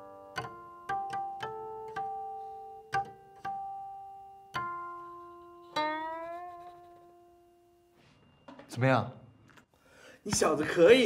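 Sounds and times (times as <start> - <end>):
plucked zither harmonics: 0.0 - 7.8.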